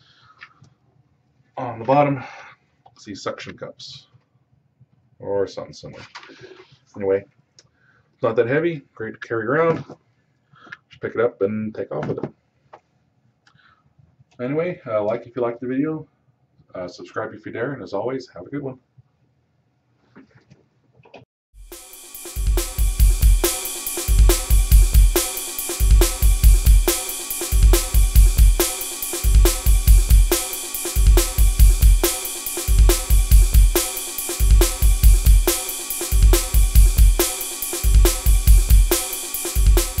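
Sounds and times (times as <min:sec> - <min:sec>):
driving drum-kit beat: 0:21.6 - 0:40.0.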